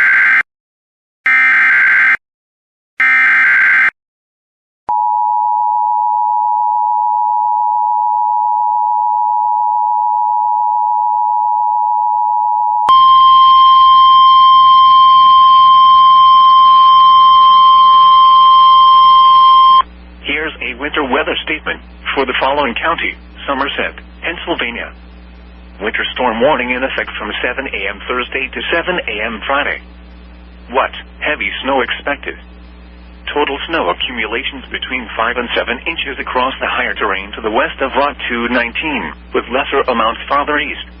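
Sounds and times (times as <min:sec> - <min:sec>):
radio static: 0:16.3 - 0:41.0.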